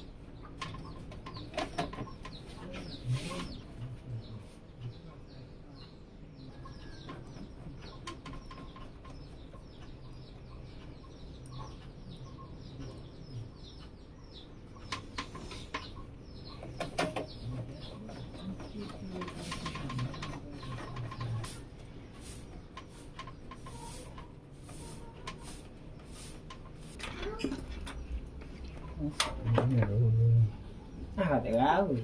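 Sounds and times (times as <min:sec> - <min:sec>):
small birds chirping: 0:00.0 - 0:32.0
sharp clicks and knocks: 0:00.4 - 0:03.6, 0:06.8 - 0:12.0, 0:14.8 - 0:21.6, 0:22.6 - 0:30.0.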